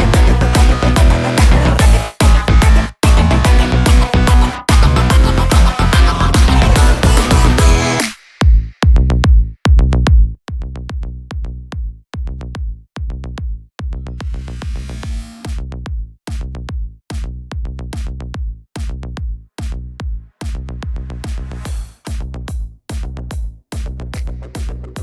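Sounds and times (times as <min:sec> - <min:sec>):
electronic dance music: 0:00.0 - 0:08.2, 0:14.2 - 0:15.6, 0:21.2 - 0:22.2, 0:24.2 - 0:25.0.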